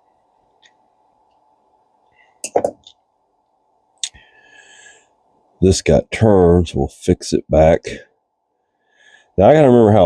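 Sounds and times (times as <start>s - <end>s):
knock on bench: 2.5s - 2.8s.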